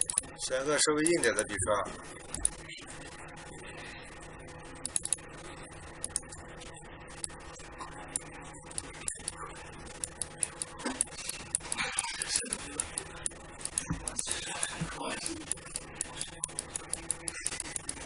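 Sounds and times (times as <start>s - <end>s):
faint steady hum: 0.0s - 18.0s
mouse and keyboard clicking: 4.8s - 5.2s, 6.0s - 6.3s, 10.0s - 18.0s.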